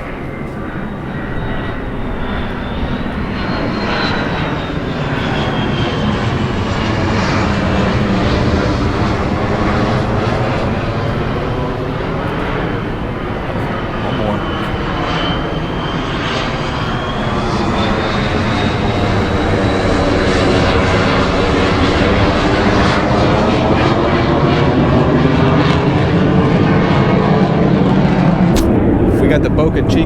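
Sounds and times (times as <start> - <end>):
high jet engine whine: 0.0 - 30.0
military jet flying over: 0.0 - 30.0.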